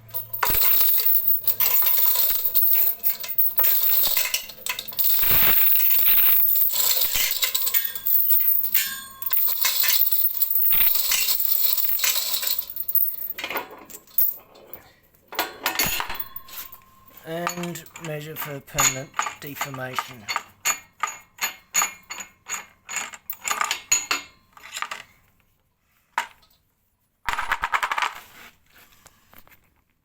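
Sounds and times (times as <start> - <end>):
steel chain rattling through block: 0.0 - 14.5.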